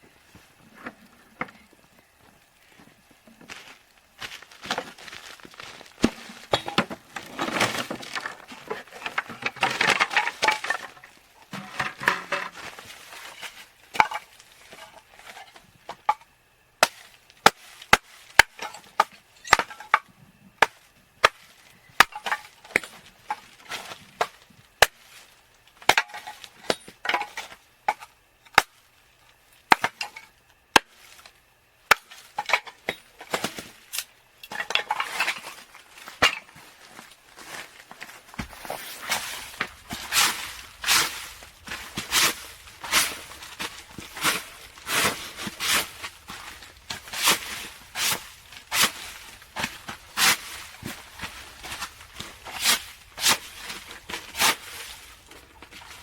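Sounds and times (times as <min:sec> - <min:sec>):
footsteps crunching in snow: 0:03.5 - 0:06.6, 0:35.9 - 0:56.0.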